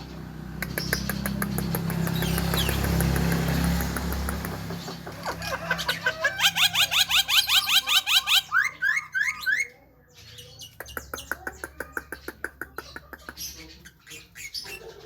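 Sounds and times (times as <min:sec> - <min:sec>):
bird chirping: 0:00.0 - 0:15.0.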